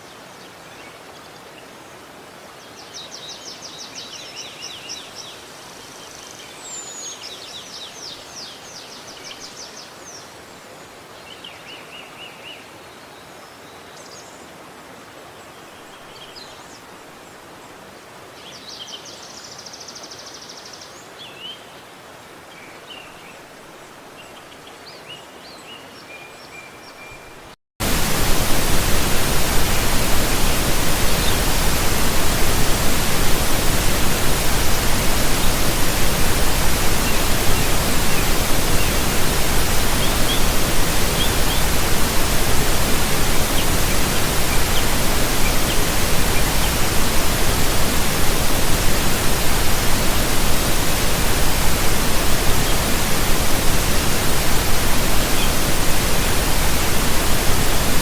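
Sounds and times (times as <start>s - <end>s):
faint background hiss: 27.8s - 58.0s
rushing water: 27.8s - 58.0s
small birds chirping: 27.8s - 58.0s.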